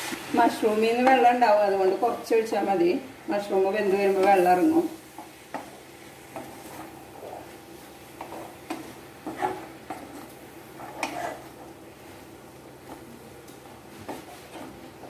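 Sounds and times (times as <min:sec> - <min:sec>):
spoon scraping a cooking pan: 0:05.1 - 0:12.2, 0:13.9 - 0:15.0.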